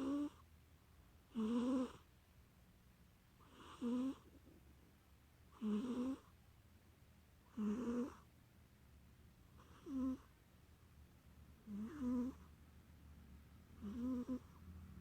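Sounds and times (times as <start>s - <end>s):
cat snoring: 0.0s - 0.4s, 1.3s - 2.1s, 3.4s - 4.4s, 5.5s - 6.3s, 7.5s - 8.3s, 9.6s - 10.3s, 11.6s - 12.5s, 13.8s - 14.7s.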